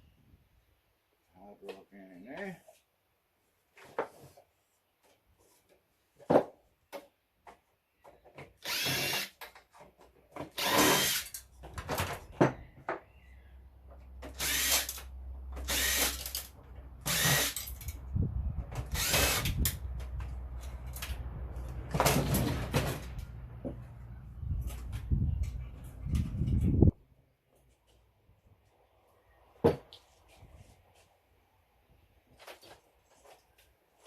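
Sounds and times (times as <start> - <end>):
power drill driving screws: 8.6 - 9.4, 10.5 - 11.4, 14.2 - 17.8, 18.8 - 19.8
low wind rumble on microphone: 17.8 - 20.6, 24.1 - 27.0.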